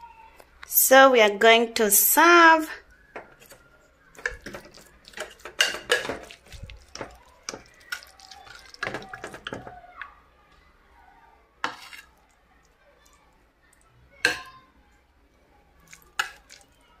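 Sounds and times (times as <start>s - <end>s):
utensils clinking on pots and plates: 4.2s - 9.7s, 14.2s - 14.6s.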